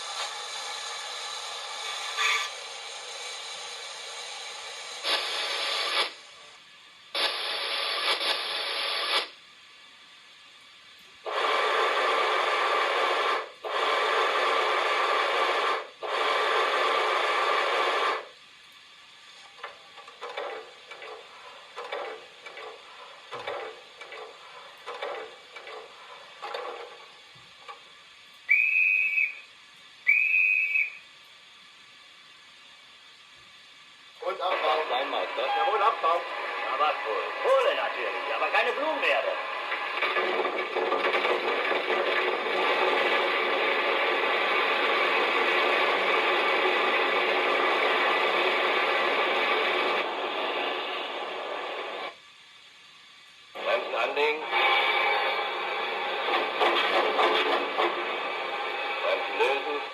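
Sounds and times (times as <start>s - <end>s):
steam hiss bursts: 0.0s - 59.9s
high whistle toots: 28.5s - 31.1s.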